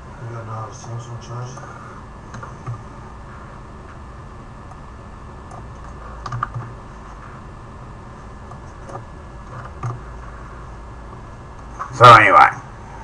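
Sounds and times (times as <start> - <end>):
low steady hum: 0.0 - 13.0
computer keyboard keystrokes: 5.5 - 6.7, 9.6 - 10.0.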